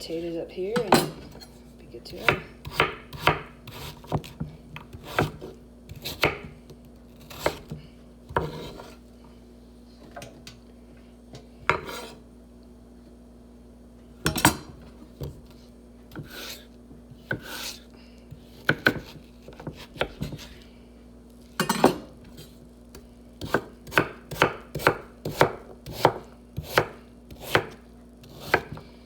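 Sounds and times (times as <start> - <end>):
knife chopping on cutting board: 2.2 - 9.0, 11.6 - 12.2, 14.2 - 20.6, 21.6 - 28.9.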